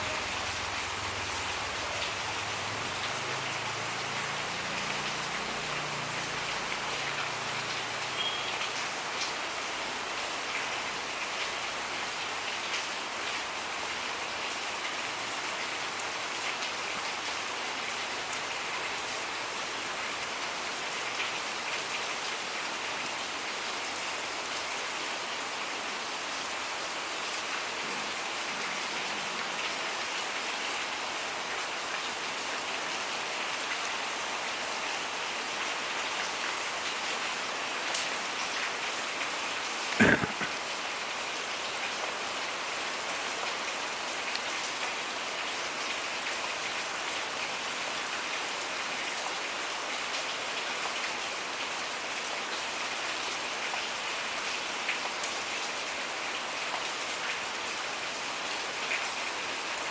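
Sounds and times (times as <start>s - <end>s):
rain pattering: 0.0s - 59.9s.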